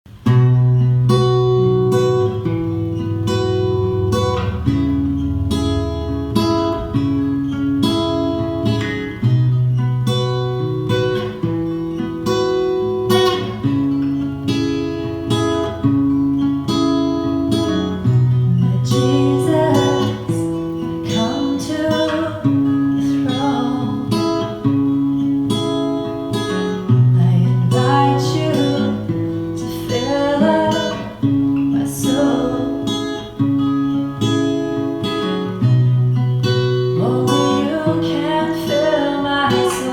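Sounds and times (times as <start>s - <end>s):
acoustic guitar strumming: 0.1s - 39.9s
person singing: 18.6s - 24.5s, 27.1s - 33.2s, 37.0s - 39.9s.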